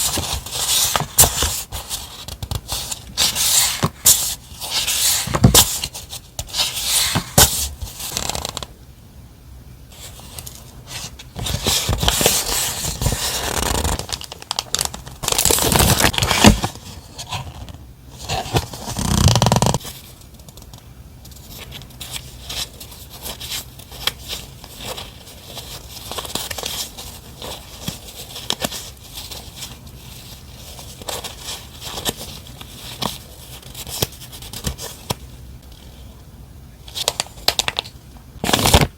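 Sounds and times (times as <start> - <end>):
paper and plastic packaging rustling: 10.0 - 17.7, 19.8 - 36.1.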